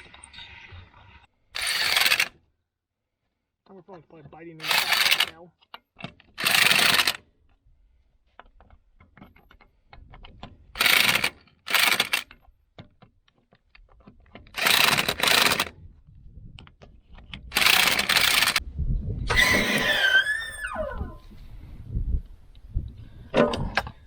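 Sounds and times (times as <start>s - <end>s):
impact wrench bursts: 1.6s - 2.3s, 4.6s - 5.3s, 6.4s - 7.2s, 14.6s - 15.7s, 17.5s - 18.6s
small metal clicks: 16.6s - 18.6s.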